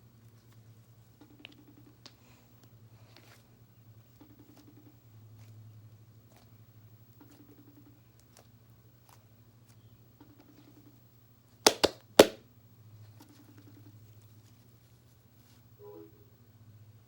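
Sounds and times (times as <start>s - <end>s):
faint low hum: 0.0s - 17.0s
sharp cracks: 11.7s - 12.4s.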